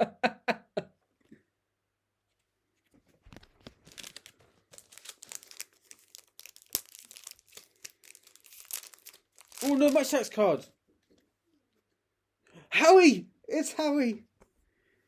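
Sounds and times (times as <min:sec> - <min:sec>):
foil wrapper crinkling and tearing: 0:03.2 - 0:10.4.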